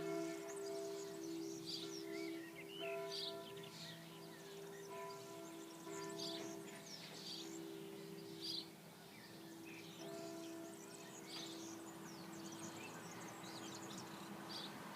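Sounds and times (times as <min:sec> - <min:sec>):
church bells ringing: 0:00.0 - 0:14.7
birds chirping: 0:00.0 - 0:14.9.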